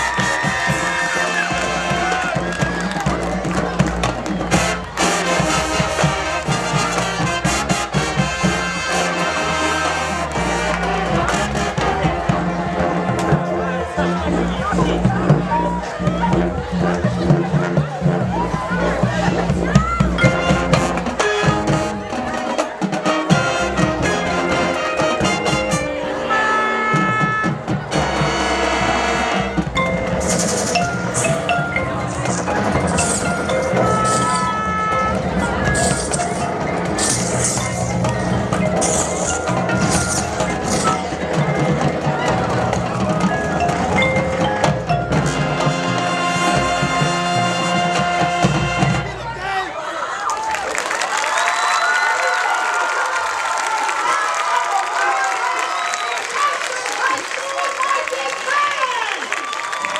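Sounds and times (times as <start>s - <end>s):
marching band playing: 0.0s - 49.4s
brass section holding chord: 4.5s - 14.6s, 23.2s - 29.8s.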